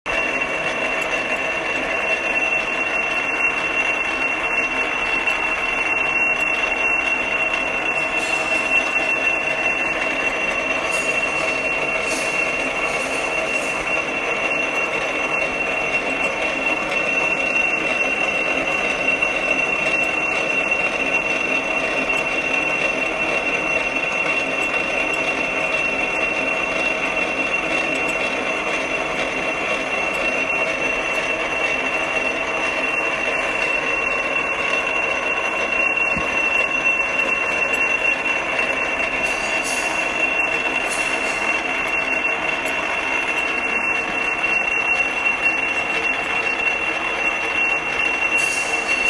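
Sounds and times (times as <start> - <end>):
drilling machine whine and grinding: 0.1 - 49.0.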